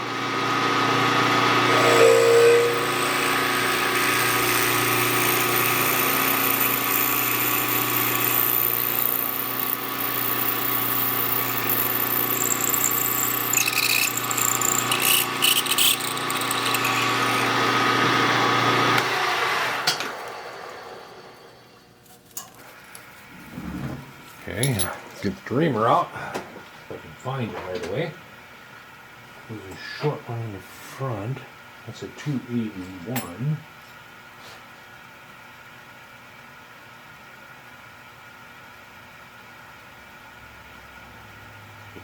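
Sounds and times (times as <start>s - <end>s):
drill cutting metal: 0.0s - 21.6s
milling machine spindle running: 0.0s - 21.8s
spindle winding down: 0.2s - 21.8s
high squeaks from cutting: 1.8s - 3.2s.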